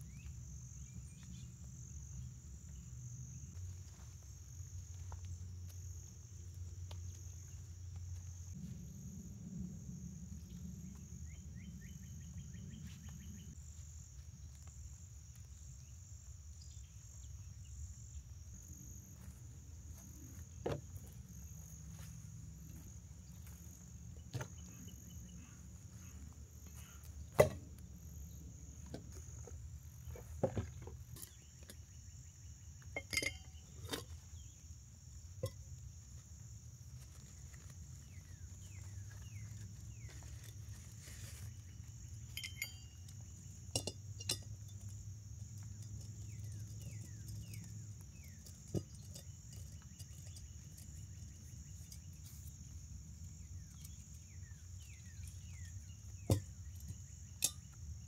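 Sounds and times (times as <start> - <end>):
insect chorus: 0.0 - 58.0
handling clicks and knocks: 33.0 - 34.1, 42.2 - 52.6.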